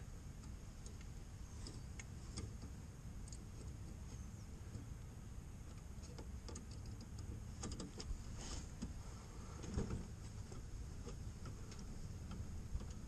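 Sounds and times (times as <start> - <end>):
low steady rumble: 0.0 - 13.0
small plastic parts clicking: 5.6 - 8.1.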